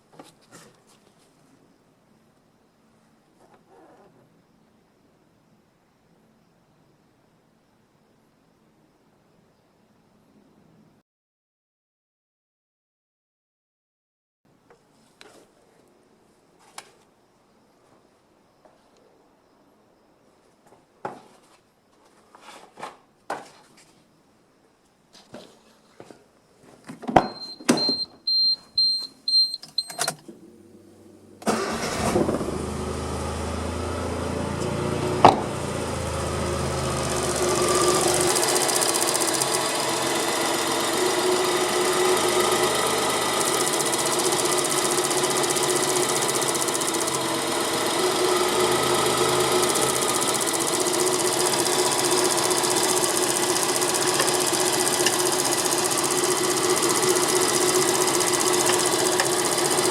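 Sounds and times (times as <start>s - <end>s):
small engine starting and idling: 27.4s - 59.9s.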